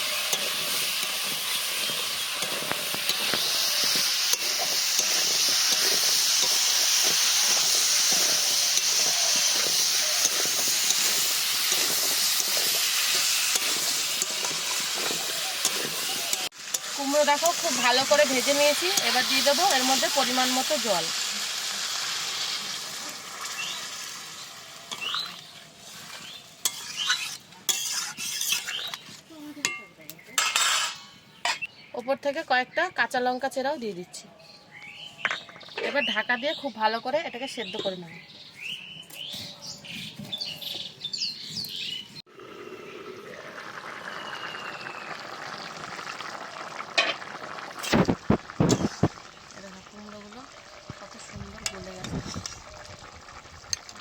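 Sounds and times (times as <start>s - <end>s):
metal spatula scraping pan: 0.0s - 20.0s, 24.9s - 29.8s, 30.4s - 31.7s
curry simmering bubbling hiss: 0.0s - 29.4s, 42.2s - 54.0s
food sizzling in oil: 0.0s - 31.6s, 42.2s - 54.0s
small birds chirping: 0.2s - 16.5s, 23.4s - 27.4s, 28.5s - 30.4s, 31.2s - 33.2s, 33.8s - 42.3s.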